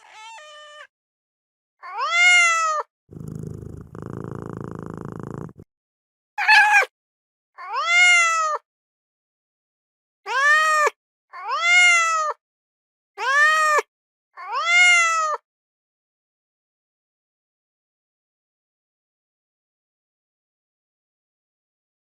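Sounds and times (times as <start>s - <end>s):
cat meowing: 0.0s - 0.9s, 1.8s - 2.9s, 7.6s - 8.6s, 10.3s - 12.4s, 14.4s - 15.4s.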